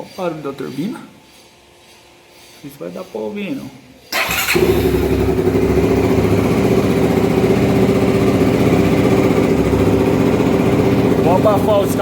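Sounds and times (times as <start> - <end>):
motorcycle engine idling: 4.1 - 12.0.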